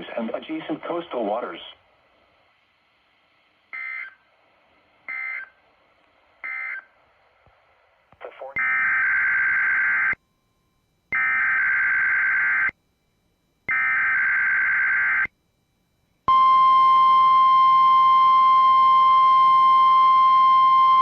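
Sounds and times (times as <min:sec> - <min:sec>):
steady alarm tone: 0:05.1 - 0:05.5, 0:08.6 - 0:21.0.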